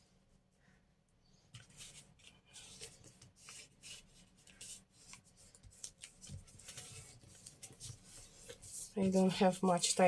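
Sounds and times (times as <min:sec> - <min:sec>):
paper pages rustling: 0:01.5 - 0:10.0.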